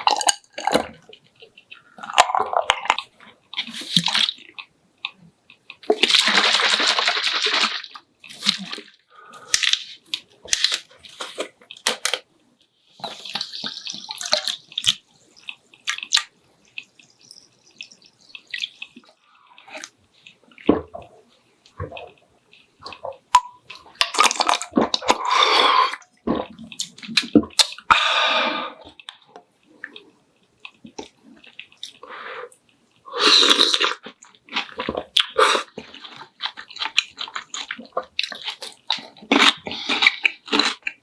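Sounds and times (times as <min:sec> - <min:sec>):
wet chewing: 0:13.0 - 0:21.1, 0:28.9 - 0:41.0.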